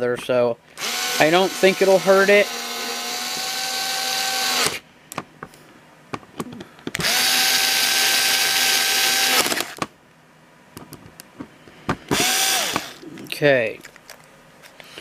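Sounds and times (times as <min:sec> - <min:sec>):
electric screwdriver motor whine: 0:00.8 - 0:04.8, 0:07.0 - 0:09.8, 0:12.1 - 0:13.0.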